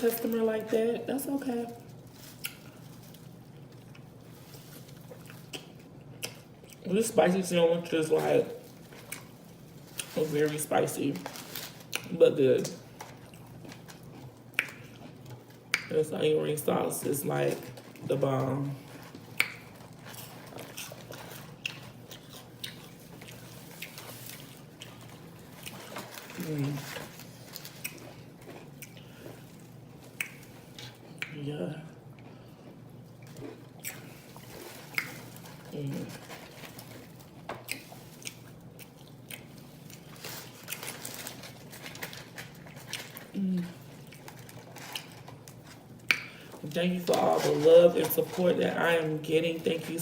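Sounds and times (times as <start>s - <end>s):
person chewing food: 1.8s - 6.9s, 8.2s - 10.2s, 12.8s - 15.9s, 18.6s - 47.6s.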